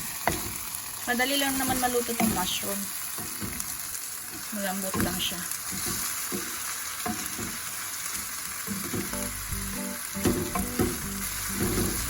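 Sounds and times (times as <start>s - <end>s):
meat sizzling in a frying pan: 0.0s - 12.0s
background music: 9.0s - 12.0s
sharp knocks: 10.2s - 12.0s.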